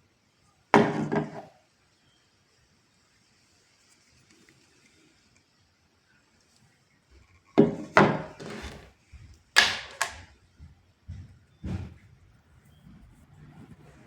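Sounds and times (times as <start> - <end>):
hard objects knocking: 7.6 - 8.9, 9.6 - 10.2.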